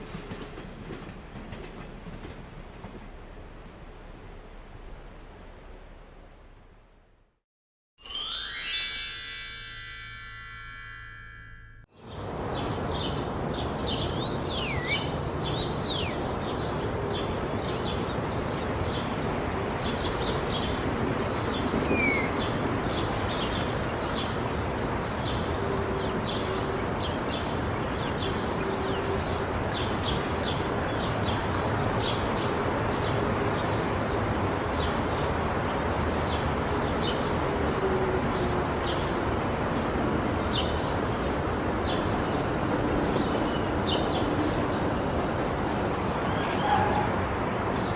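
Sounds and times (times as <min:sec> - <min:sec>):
low traffic rumble: 0:00.0 - 0:07.4, 0:12.0 - 0:47.9
birds chirping: 0:12.0 - 0:47.9.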